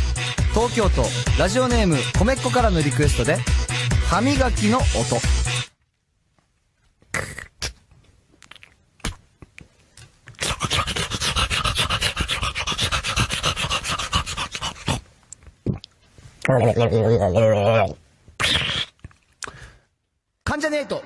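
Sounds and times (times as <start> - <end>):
man imitating tooth brushing: 0.0 - 5.6, 7.1 - 7.8, 10.4 - 15.1, 16.4 - 19.1.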